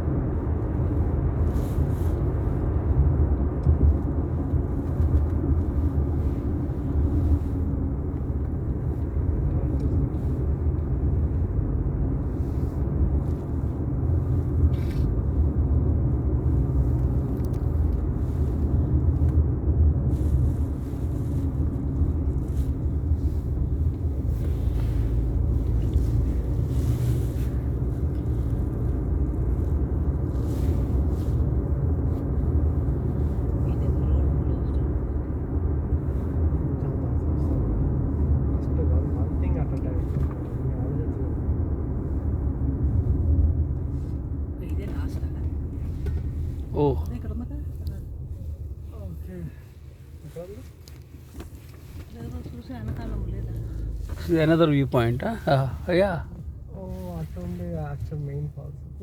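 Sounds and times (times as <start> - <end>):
car road rumble: 0.0 - 59.0.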